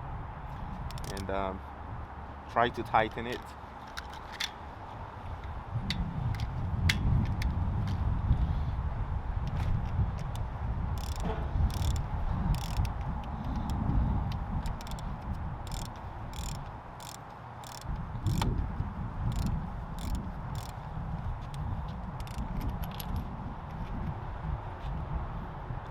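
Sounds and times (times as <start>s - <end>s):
ratchet wrench clicking: 0.9s - 1.3s, 11.0s - 13.0s, 14.6s - 18.5s, 19.3s - 20.8s, 22.2s - 22.5s.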